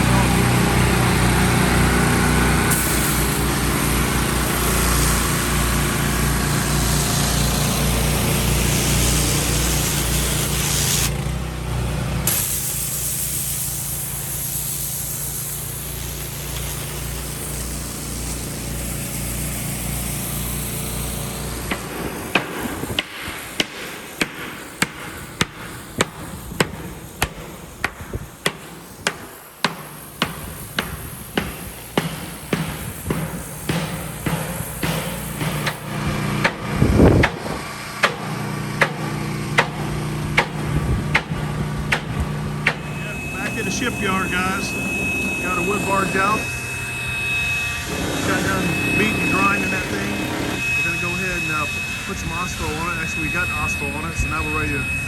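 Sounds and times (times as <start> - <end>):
grinding hiss: 0.0 - 11.4, 12.2 - 55.0
machine hum: 0.0 - 23.0, 30.0 - 55.0
sharp metal blows: 21.7 - 55.0.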